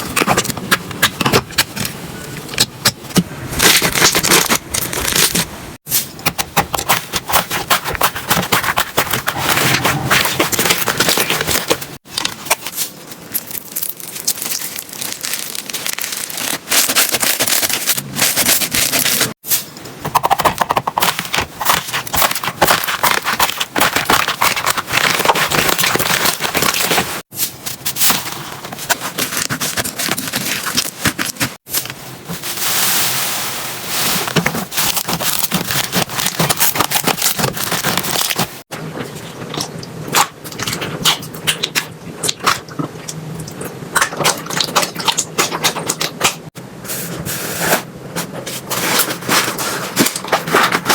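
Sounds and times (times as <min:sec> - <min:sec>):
slime squelching: 0:02.4 - 0:19.4, 0:20.2 - 0:32.8, 0:33.9 - 0:46.6
slime crackling and popping: 0:08.2 - 0:19.4.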